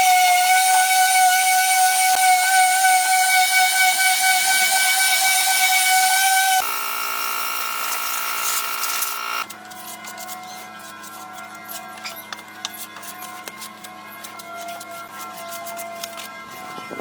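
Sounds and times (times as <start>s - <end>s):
power tool motor whine: 0.0s - 9.6s.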